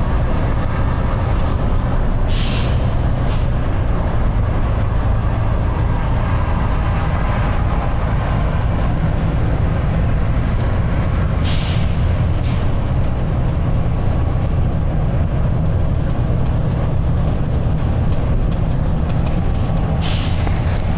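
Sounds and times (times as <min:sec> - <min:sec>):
bus diesel engine running: 0:00.0 - 0:20.9
air brake hisses: 0:02.3 - 0:03.5, 0:11.3 - 0:12.6, 0:20.0 - 0:20.7.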